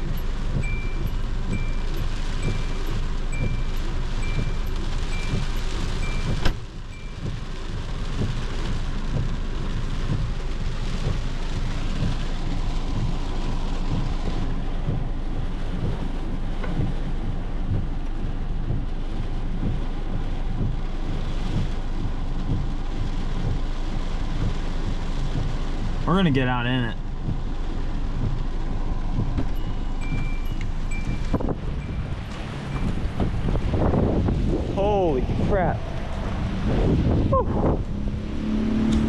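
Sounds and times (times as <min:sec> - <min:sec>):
heavy rain on vehicle: 0:00.0 - 0:39.0
gusty wind rumbling: 0:27.1 - 0:39.0.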